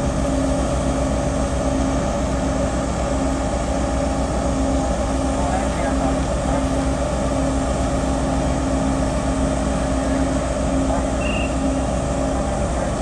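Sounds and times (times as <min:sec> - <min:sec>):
ship engines droning: 0:00.0 - 0:13.0.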